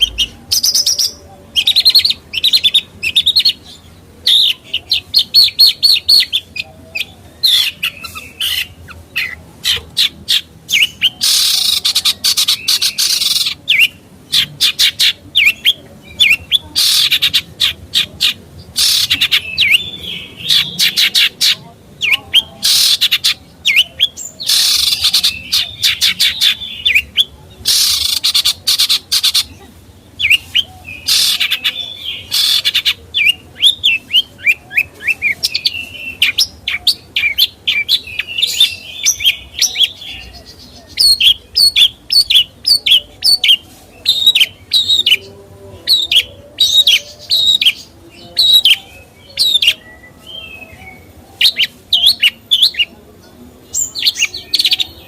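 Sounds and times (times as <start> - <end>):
songbird singing: 0.0 - 55.0.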